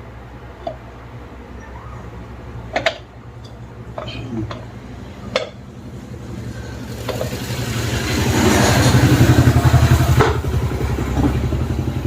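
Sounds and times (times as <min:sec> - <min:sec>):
engine running with low throb: 0:03.4 - 0:12.0.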